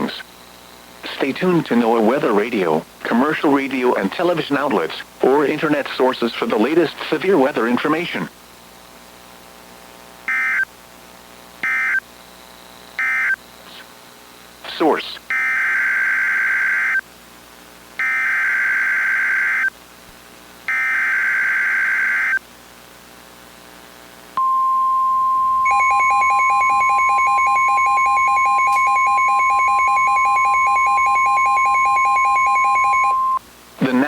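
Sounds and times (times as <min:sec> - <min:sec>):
buzzing data bursts: 0:11.6 - 0:12.0, 0:20.7 - 0:22.4, 0:25.4 - 0:34.0
steady warning alarm tone: 0:11.6 - 0:12.0, 0:13.0 - 0:13.4, 0:15.3 - 0:17.0, 0:18.0 - 0:19.7, 0:20.7 - 0:22.4, 0:24.4 - 0:33.4
rapidly pulsing beep: 0:24.4 - 0:33.4.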